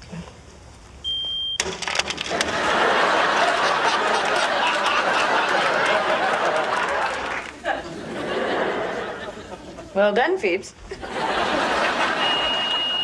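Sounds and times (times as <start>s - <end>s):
smoke detector chirp: 1.0s - 1.6s, 12.0s - 13.0s
studio audience laughing: 2.3s - 10.0s, 10.9s - 13.0s.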